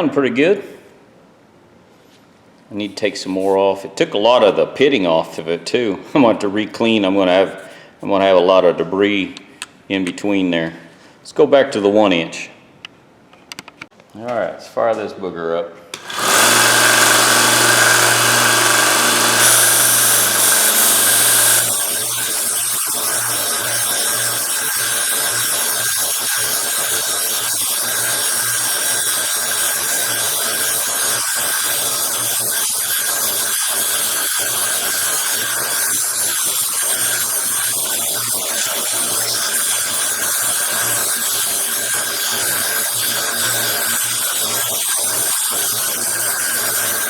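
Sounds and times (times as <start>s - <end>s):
belt sander running: 16.0s - 25.9s.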